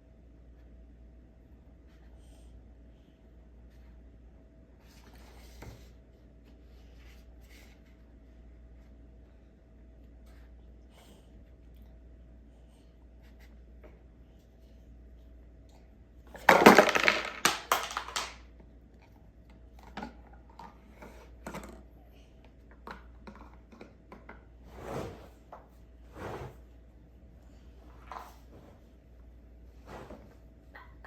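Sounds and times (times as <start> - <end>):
plastic toy pieces clattering: 16.3 - 18.4.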